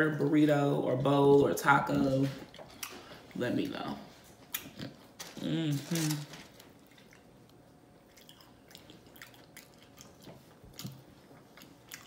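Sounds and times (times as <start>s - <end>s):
person chewing food: 2.4s - 3.4s, 4.3s - 12.0s.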